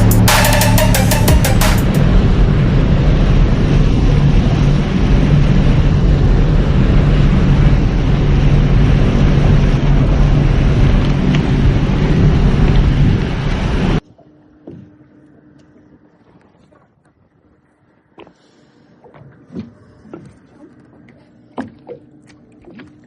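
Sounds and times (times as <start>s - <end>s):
motorboat engine running: 0.0s - 23.0s
wind noise on microphone: 2.0s - 14.0s.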